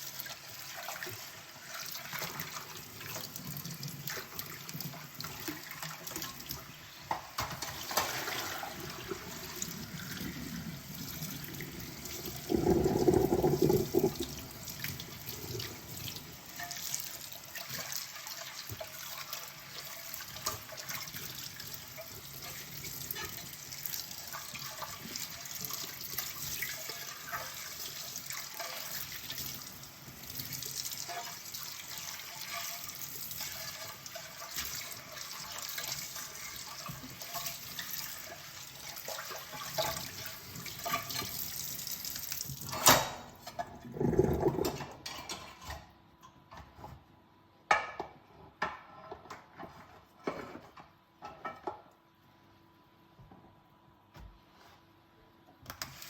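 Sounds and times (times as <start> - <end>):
tap water running into sink: 0.0 - 43.2.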